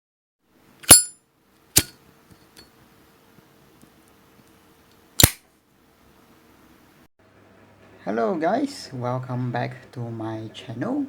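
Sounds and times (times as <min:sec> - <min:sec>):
lighter sharp click: 0:05.2 - 0:05.4.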